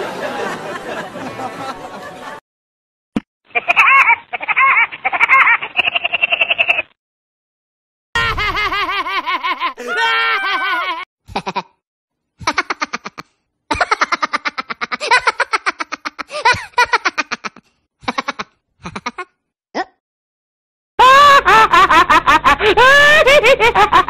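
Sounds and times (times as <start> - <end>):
high wavering cartoon laugh: 3.5 - 7.0, 8.2 - 11.8, 12.4 - 19.4, 21.0 - 24.0
high-pitched cartoon giggling: 3.5 - 7.0, 8.2 - 11.8, 12.4 - 20.0
rapid staccato cartoon laugh: 3.5 - 7.0, 8.2 - 11.8, 12.4 - 19.4, 21.0 - 24.0.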